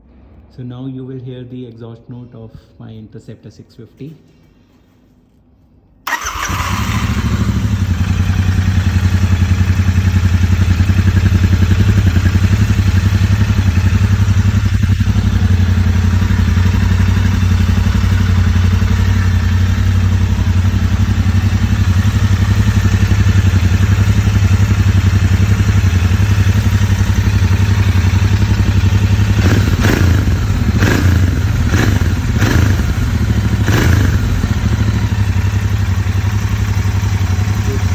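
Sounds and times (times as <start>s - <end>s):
motorcycle engine starting and idling: 6.0s - 37.9s
engine revving bursts: 6.1s - 37.9s.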